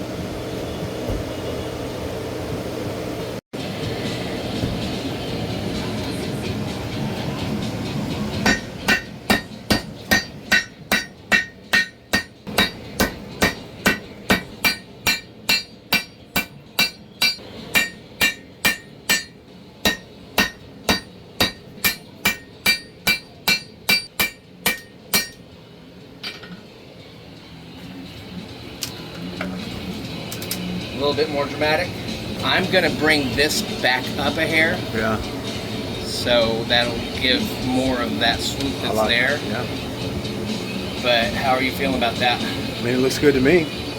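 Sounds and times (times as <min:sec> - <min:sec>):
hammer striking steel on anvil: 0:08.4 - 0:25.5.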